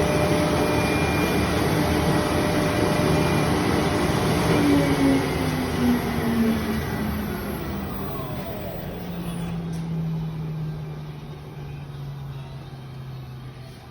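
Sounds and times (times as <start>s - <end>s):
machine motor hum: 0.0s - 13.0s
faint descending whine: 2.2s - 12.3s.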